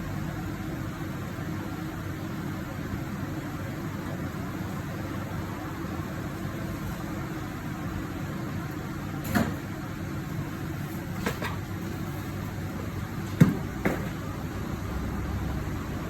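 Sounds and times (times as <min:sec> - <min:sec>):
clunks and knocks of tyre work: 0:13.3 - 0:14.2.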